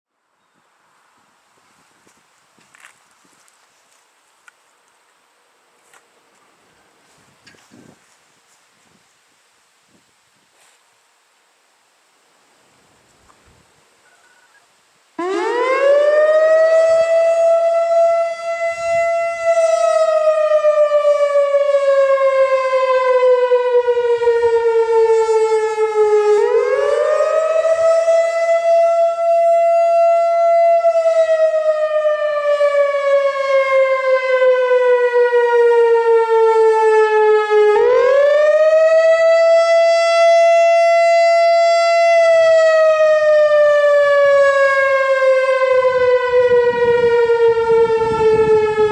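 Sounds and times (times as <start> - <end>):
outdoor warning siren wailing: 15.2 - 48.9.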